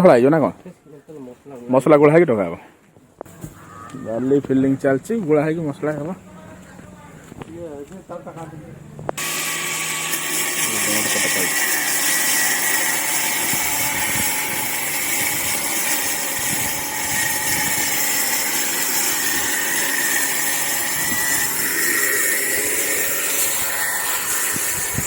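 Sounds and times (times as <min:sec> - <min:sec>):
construction machine whirring: 0:09.0 - 0:25.0.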